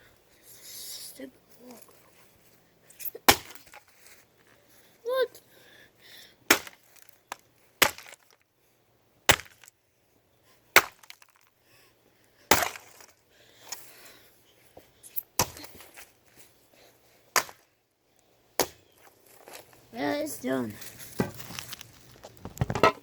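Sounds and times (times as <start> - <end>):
axe smashing plastic clock: 3.3 - 3.8, 6.5 - 7.2, 7.8 - 8.4, 9.3 - 9.7, 10.8 - 11.4, 12.5 - 13.1, 17.4 - 17.6.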